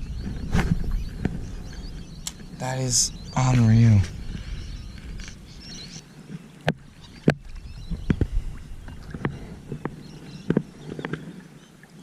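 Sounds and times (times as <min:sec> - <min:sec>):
low water: 0:00.0 - 0:12.0
knocks and taps on kayak: 0:06.6 - 0:11.2.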